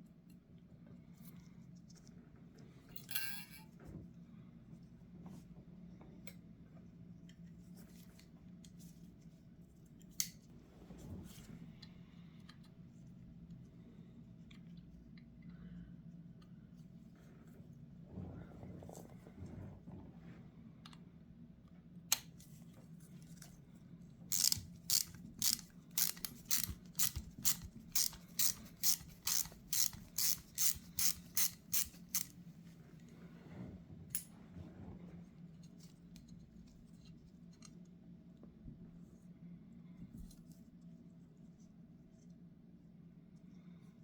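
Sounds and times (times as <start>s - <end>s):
sharp mechanical clicks: 24.3s - 32.3s.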